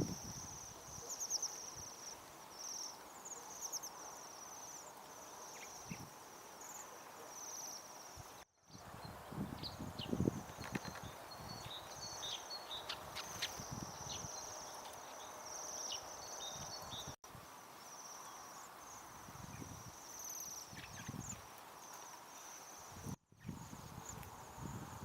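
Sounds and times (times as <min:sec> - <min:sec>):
birds trilling calls: 0:09.6 - 0:17.2.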